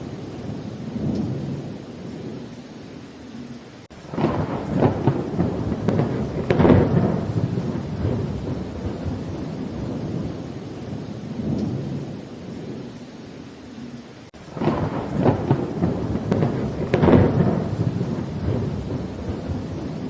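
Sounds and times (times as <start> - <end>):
thunder rumbling: 0.0 - 2.6, 3.4 - 13.2, 14.3 - 20.0
steady rain: 0.0 - 20.0
thunderclap with sharp cracks: 3.9 - 12.9, 14.4 - 20.0.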